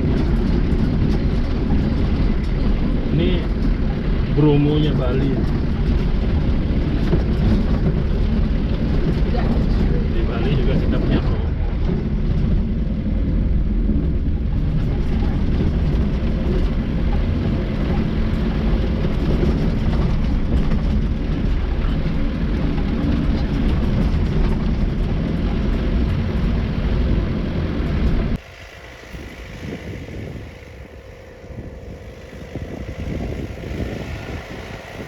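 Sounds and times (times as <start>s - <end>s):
off-road vehicle engine: 0.0s - 35.0s.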